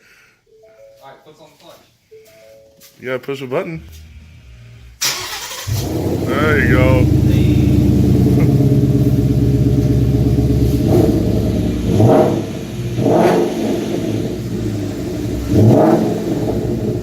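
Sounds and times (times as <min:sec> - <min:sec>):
engine throttle blips: 0:03.6 - 0:17.0
car engine idling: 0:03.8 - 0:17.0.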